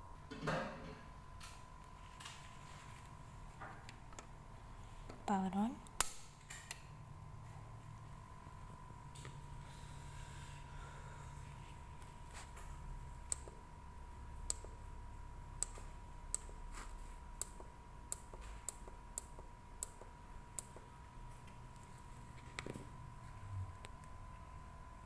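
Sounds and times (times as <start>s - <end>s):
sharp clicks: 14.4s - 14.8s.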